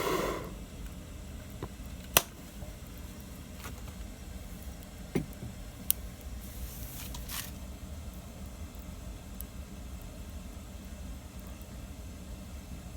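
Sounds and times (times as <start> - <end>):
wood fire crackling: 0.0 - 12.9.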